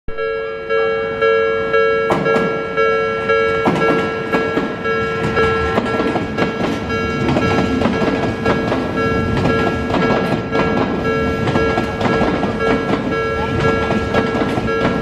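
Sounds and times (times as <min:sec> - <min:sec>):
level-crossing warning bell: 0:00.1 - 0:15.0
train wheels clacking over rail joints: 0:03.6 - 0:15.0.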